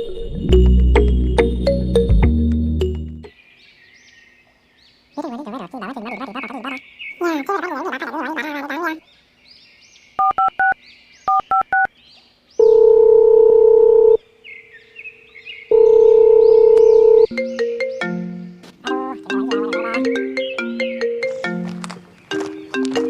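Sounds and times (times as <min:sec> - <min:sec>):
marimba-like ringtone melody: 0:00.5 - 0:03.3, 0:15.7 - 0:23.0
keypad dialing beeps: 0:10.2 - 0:11.9
phone ringing tones: 0:12.6 - 0:14.2, 0:15.7 - 0:17.4
faint bird chirps: 0:14.4 - 0:18.4.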